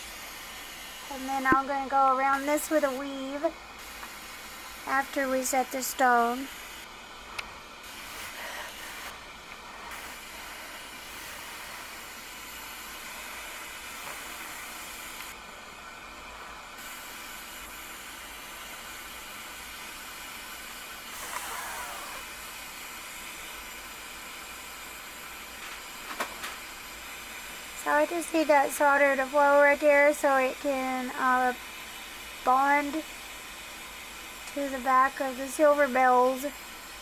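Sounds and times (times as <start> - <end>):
soldering torch flame hissing: 0.0 - 37.0.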